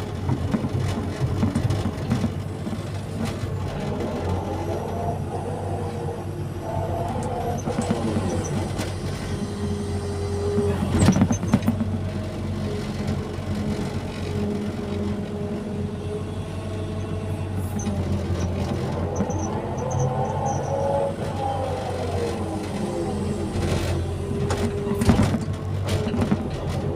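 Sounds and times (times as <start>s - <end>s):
excavator diesel engine running: 0.0s - 26.9s
hydraulic whining: 2.4s - 12.5s, 14.2s - 26.9s
loud clunk: 23.6s - 26.8s.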